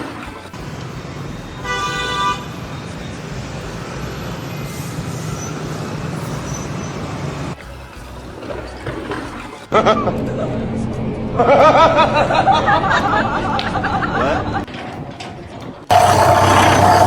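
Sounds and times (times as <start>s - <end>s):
traffic noise: 0.0s - 17.0s
vehicle horn toot: 1.6s - 2.8s.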